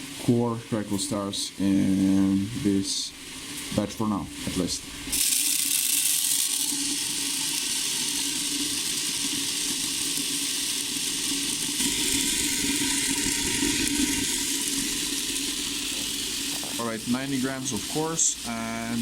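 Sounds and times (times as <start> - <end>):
pellets tumbling in rotating bucket: 4.6 - 19.0.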